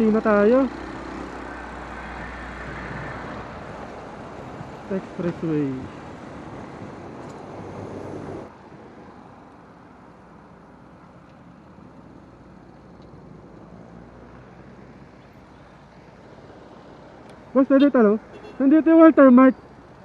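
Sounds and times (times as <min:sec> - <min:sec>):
wind rushing over microphone: 0:00.7 - 0:09.1.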